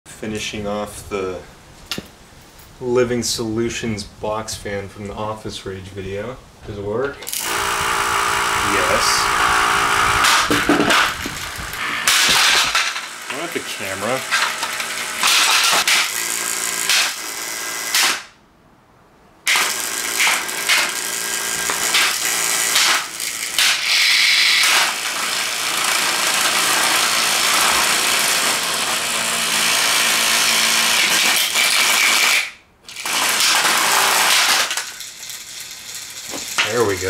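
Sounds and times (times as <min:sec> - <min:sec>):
box fan rattling: 0:07.4 - 0:17.0.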